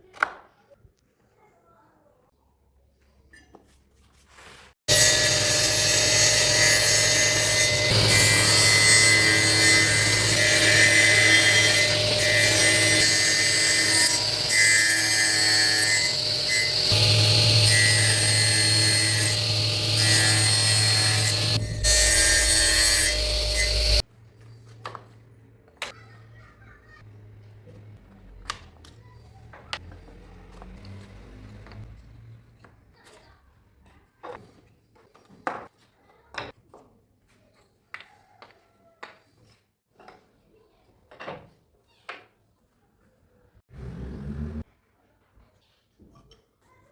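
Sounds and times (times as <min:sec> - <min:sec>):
power tool cutting wood: 0:04.9 - 0:24.0.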